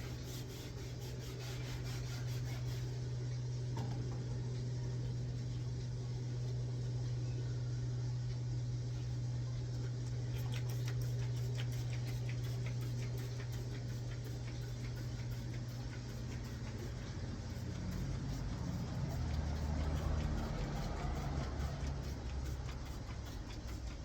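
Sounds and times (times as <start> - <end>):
low motor hum: 0.0 - 24.0
rapid light clicks: 10.5 - 24.0.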